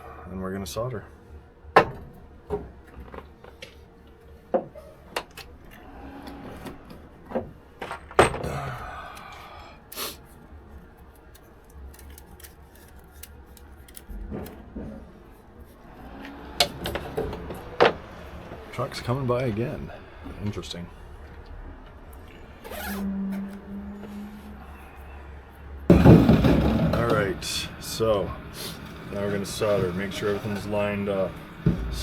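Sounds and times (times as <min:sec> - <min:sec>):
tools and pipes clicking: 0:11.0 - 0:14.7.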